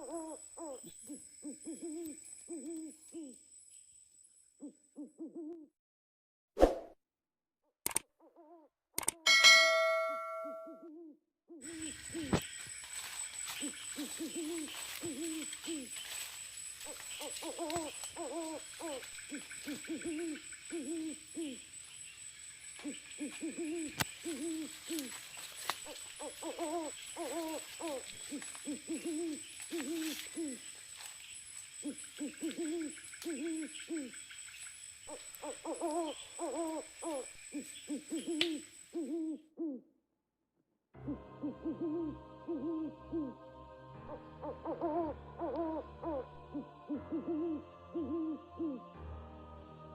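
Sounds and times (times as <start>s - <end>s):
owl hooting: 0.0s - 3.4s, 4.6s - 5.7s, 9.3s - 21.8s, 22.8s - 30.8s, 31.8s - 34.3s, 35.0s - 39.9s, 41.0s - 43.4s, 44.1s - 48.9s.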